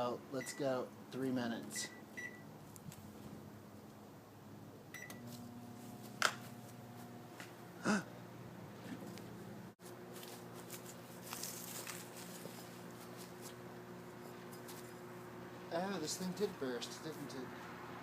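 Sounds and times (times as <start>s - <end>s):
microwave keypad beep: 1.8s - 2.5s, 5.0s - 5.2s
microwave oven humming: 4.8s - 11.1s.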